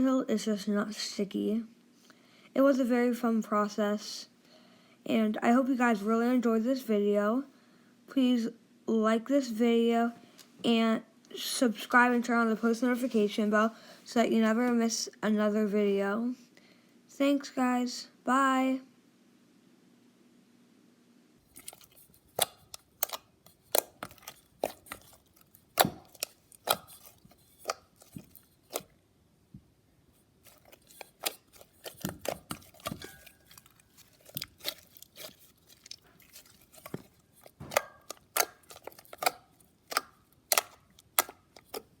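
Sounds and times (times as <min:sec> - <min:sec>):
slime squished by hand: 0:21.5 - 0:28.9, 0:30.4 - 0:41.9.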